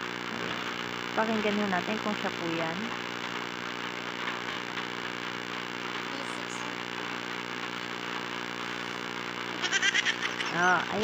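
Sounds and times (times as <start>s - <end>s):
buzzy pitched drone: 5.1s - 11.0s.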